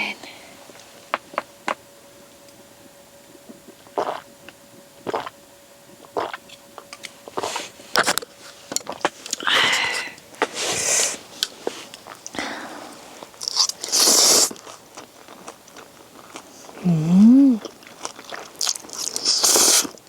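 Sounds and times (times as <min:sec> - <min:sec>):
chewing and slurping noodles: 0:03.8 - 0:04.3, 0:05.0 - 0:05.4, 0:06.0 - 0:06.6, 0:13.2 - 0:16.8, 0:17.6 - 0:20.0.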